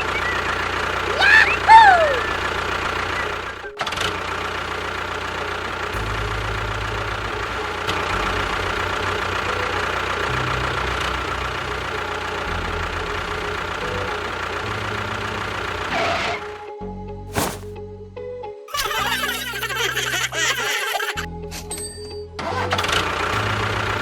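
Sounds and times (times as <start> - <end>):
engine idling: 0.0 - 16.6, 22.4 - 24.0.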